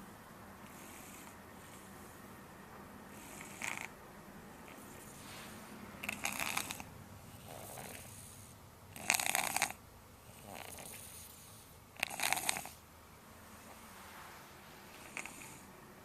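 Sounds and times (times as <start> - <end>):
soft breathing: 0.6 - 2.4, 4.6 - 8.7, 10.2 - 15.8
person snoring: 6.0 - 8.4, 12.0 - 12.8.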